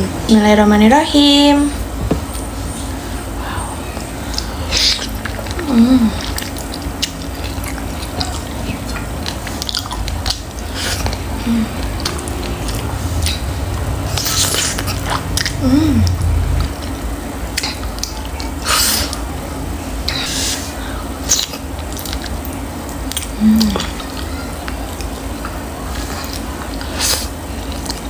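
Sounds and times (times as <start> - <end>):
close-miked biting and chewing: 4.3 - 13.4.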